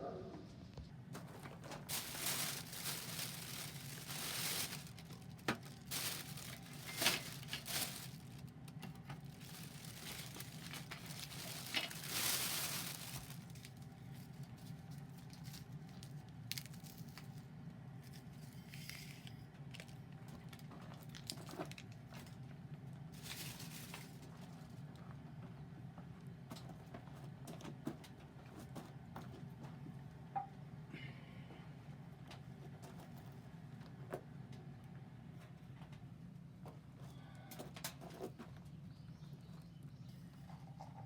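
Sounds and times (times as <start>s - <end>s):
steady low hum: 0.0s - 16.5s
crinkling rustling handling: 1.1s - 17.4s, 19.7s - 22.4s, 23.2s - 25.0s.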